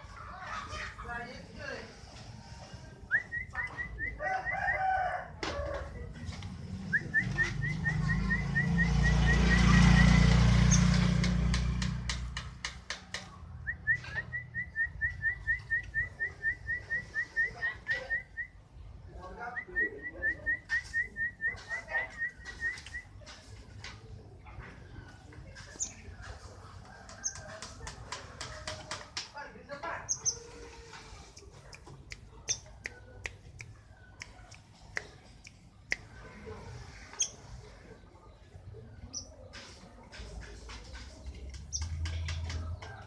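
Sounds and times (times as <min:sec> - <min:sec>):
canary singing: 0:06.8 - 0:12.4, 0:13.6 - 0:18.6, 0:29.9 - 0:36.1, 0:36.9 - 0:37.6, 0:39.0 - 0:39.5, 0:41.5 - 0:43.0.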